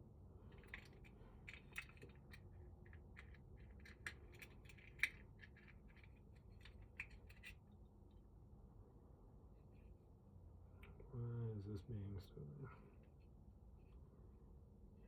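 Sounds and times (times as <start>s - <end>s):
faint clicks of lock parts: 0.5s - 7.6s.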